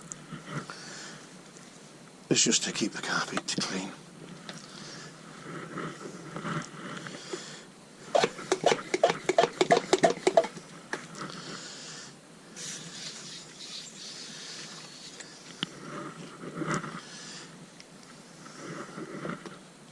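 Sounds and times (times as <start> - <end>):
aerosol can ball rattling: 8.4 - 10.6
spray hiss: 12.5 - 15.4.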